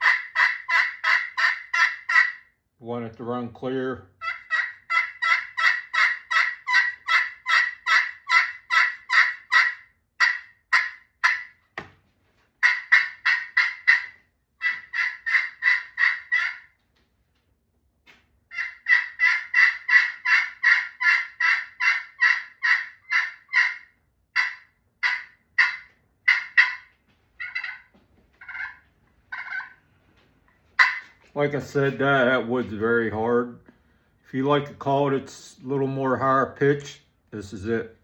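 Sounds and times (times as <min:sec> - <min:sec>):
turkey call yelping: 0:00.0 - 0:02.5, 0:04.2 - 0:11.6, 0:12.6 - 0:16.8, 0:18.5 - 0:29.8, 0:30.8 - 0:31.2.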